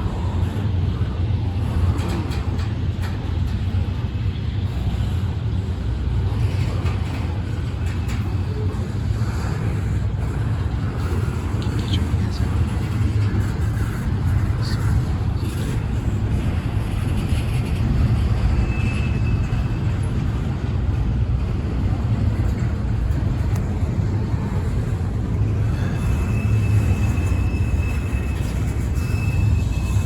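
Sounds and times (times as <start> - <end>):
train wheels rumbling on rail: 0.0 - 30.0
faint high-pitched squeal: 25.7 - 30.0.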